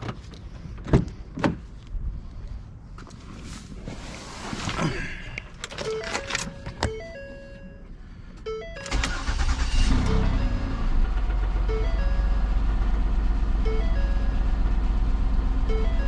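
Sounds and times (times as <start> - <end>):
car engine starting and idling: 5.5 - 16.0
dashboard warning chime: 5.8 - 13.0, 13.6 - 15.0, 15.6 - 16.0.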